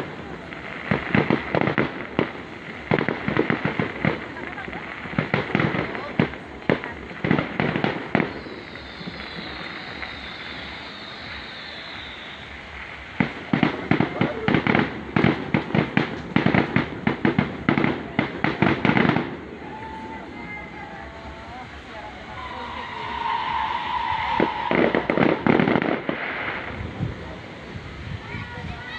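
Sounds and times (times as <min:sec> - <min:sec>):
fireworks bangs and crackles: 0:00.0 - 0:28.9
high whistle falling in pitch: 0:08.2 - 0:13.2, 0:22.2 - 0:26.0.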